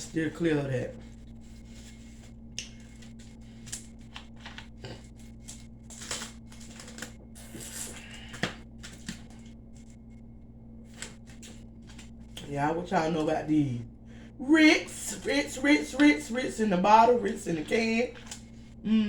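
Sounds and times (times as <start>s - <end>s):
steady low hum: 0.0s - 19.0s
chewing and handling food: 0.8s - 12.5s, 17.3s - 18.8s.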